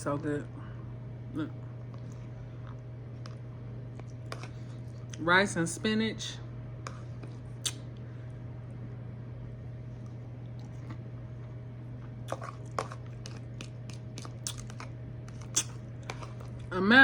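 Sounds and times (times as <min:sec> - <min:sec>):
steady low hum: 0:00.0 - 0:17.0
person chewing food: 0:01.6 - 0:05.2, 0:06.8 - 0:08.0, 0:10.0 - 0:16.7
mouth smacks: 0:07.6 - 0:07.9, 0:15.4 - 0:15.8.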